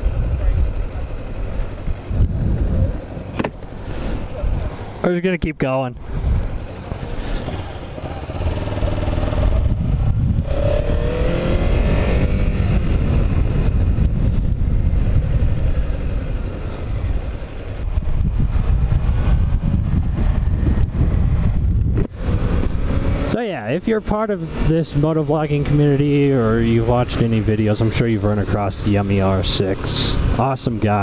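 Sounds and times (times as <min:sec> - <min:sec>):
wind rushing on microphone: 0:00.0 - 0:05.0, 0:06.0 - 0:31.0
motorcycle engine accelerating: 0:06.4 - 0:23.4.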